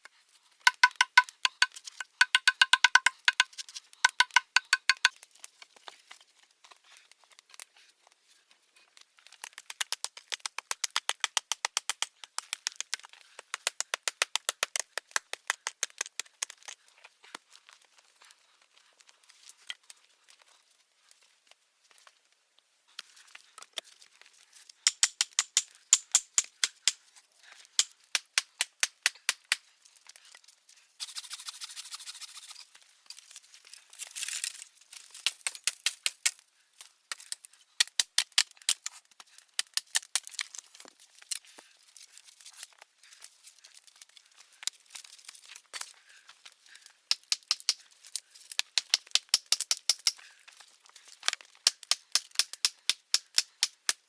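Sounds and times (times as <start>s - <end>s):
sharp high clicking taps: 0.7s - 3.5s, 4.1s - 5.1s, 24.9s - 27.0s, 47.1s - 47.8s, 48.8s - 50.2s, 51.7s - 54.0s.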